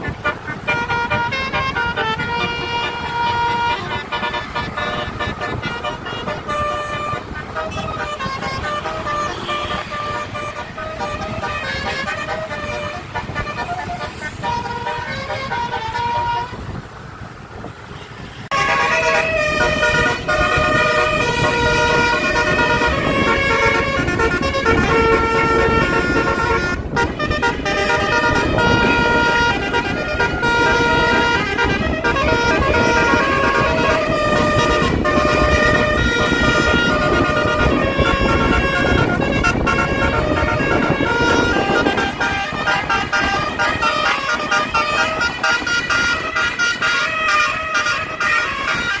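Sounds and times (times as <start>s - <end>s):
multi-tone air horn melody: 0.0s - 16.8s, 18.0s - 49.0s.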